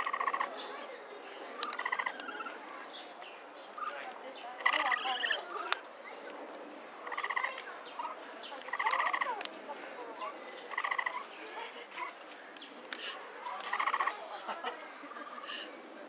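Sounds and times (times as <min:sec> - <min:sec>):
capybara chirring call: 0:00.0 - 0:00.6, 0:01.7 - 0:02.6, 0:04.6 - 0:05.6, 0:07.1 - 0:08.1, 0:08.7 - 0:09.4, 0:10.7 - 0:11.3, 0:13.6 - 0:14.2.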